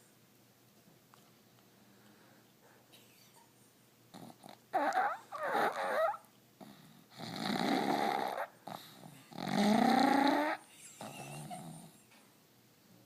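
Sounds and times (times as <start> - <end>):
dog snoring: 4.1 - 12.0.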